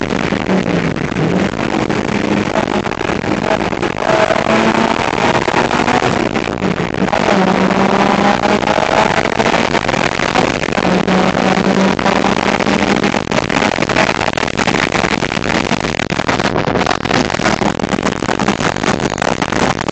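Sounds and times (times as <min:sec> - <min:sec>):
car engine running: 0:00.0 - 0:19.9
road noise: 0:00.0 - 0:19.9
wind noise on microphone: 0:00.0 - 0:19.9.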